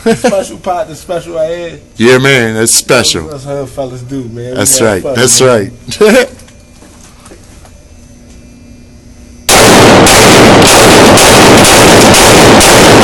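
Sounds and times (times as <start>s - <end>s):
rapid gunshots: 9.5s - 13.0s.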